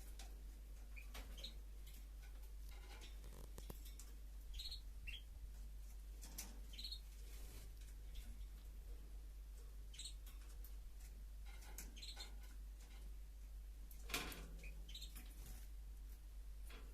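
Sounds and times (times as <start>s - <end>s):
goldfinch chirping: 1.0s - 1.6s, 4.5s - 5.3s, 6.7s - 7.1s, 9.9s - 10.2s, 11.9s - 12.4s, 14.6s - 15.3s.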